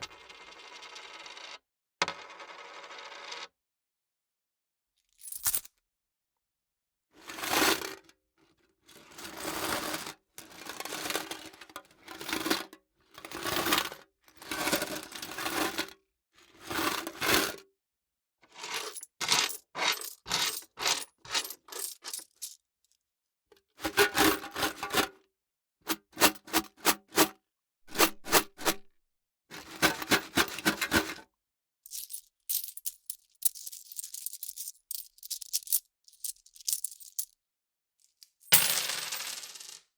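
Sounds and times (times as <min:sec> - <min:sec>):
metal coins clinking: 0:05.2 - 0:05.7, 0:31.9 - 0:37.4, 0:38.2 - 0:39.8.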